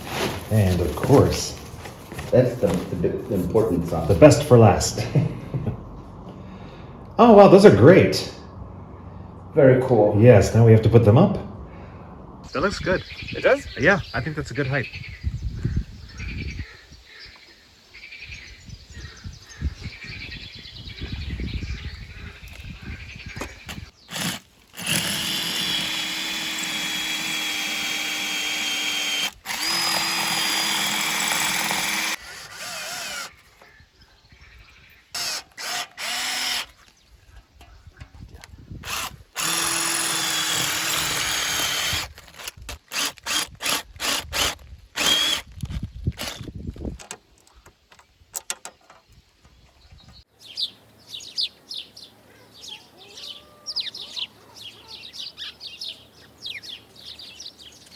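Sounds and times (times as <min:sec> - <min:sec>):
birds chirping faintly: 0:00.2 - 0:42.6, 0:45.0 - 0:57.9
power drill whining: 0:24.1 - 0:33.4, 0:35.1 - 0:36.9, 0:38.8 - 0:46.5.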